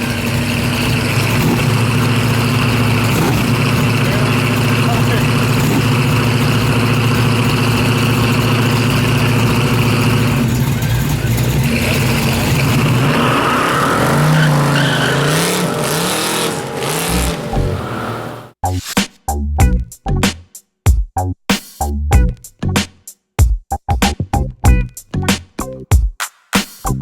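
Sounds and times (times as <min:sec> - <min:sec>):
car engine revving: 0:00.0 - 0:18.6.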